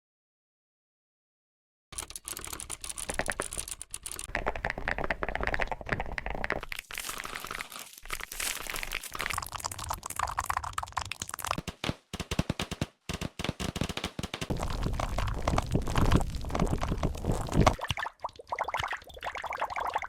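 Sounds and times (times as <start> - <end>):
rapid keyboard typing: 1.9 - 6.8, 9.2 - 17.7.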